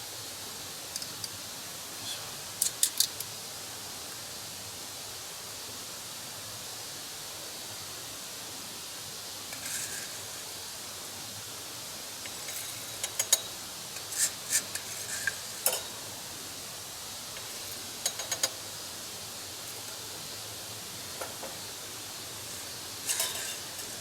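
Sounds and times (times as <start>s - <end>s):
steady background hiss: 0.0s - 24.0s
cookware clinking: 17.4s - 18.6s, 23.0s - 24.0s.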